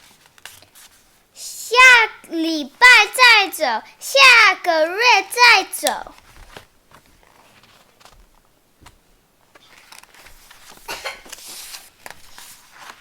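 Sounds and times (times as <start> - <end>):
book pages rustling: 9.6 - 13.0.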